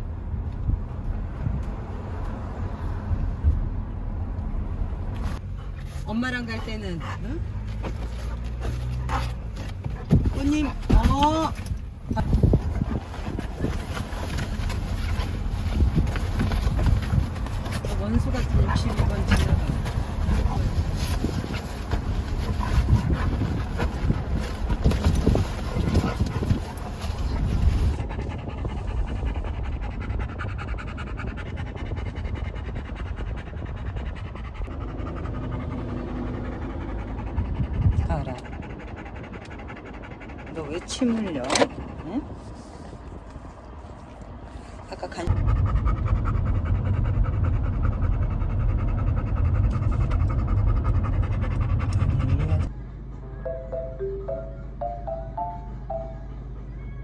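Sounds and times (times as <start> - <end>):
dog panting: 5.2 - 43.4, 44.0 - 52.7
low rumbling noise: 45.3 - 56.8
soft mallet percussion music: 53.3 - 56.4.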